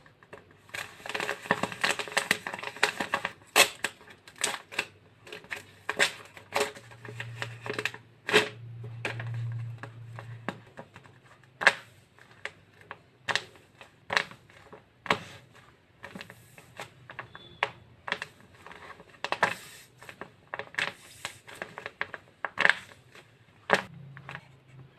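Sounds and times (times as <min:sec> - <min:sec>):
paper and plastic crinkling: 0:00.3 - 0:23.9.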